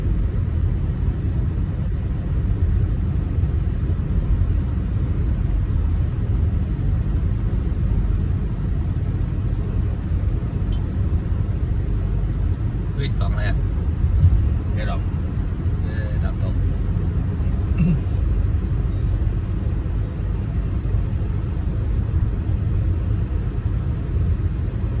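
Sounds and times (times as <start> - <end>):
wind buffeting microphone: 13.6 - 15.8.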